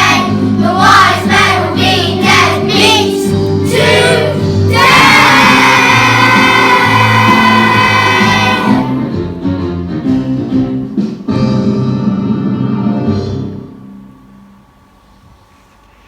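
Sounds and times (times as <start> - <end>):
children's choir singing: 0.0 - 9.3
instrumental backing music: 0.0 - 14.6.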